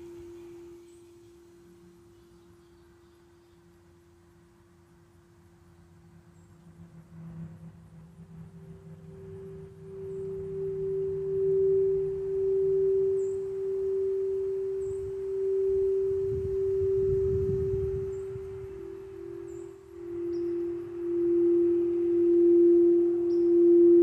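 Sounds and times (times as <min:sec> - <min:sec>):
singing bowl ringing: 0:00.0 - 0:24.0.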